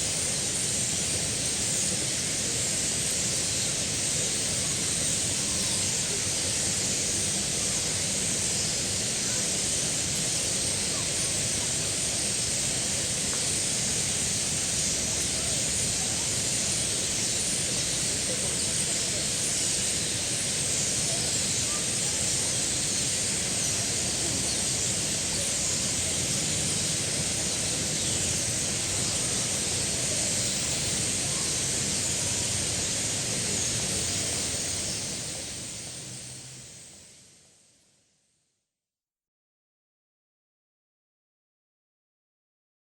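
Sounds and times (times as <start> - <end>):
flock of starlings chattering: 0.0 - 37.0.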